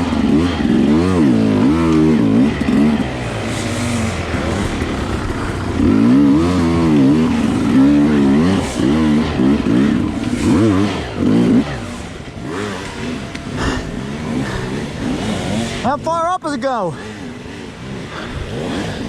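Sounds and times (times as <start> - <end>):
dirt bike engine revving: 0.0 - 19.0.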